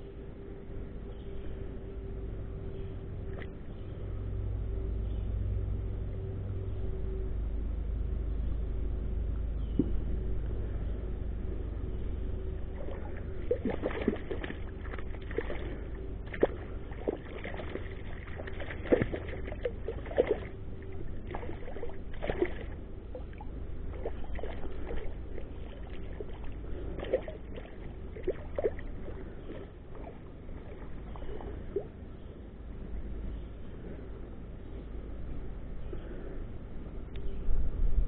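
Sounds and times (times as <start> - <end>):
steady low rumble: 0.0 - 38.0
river water splashing: 12.5 - 32.0.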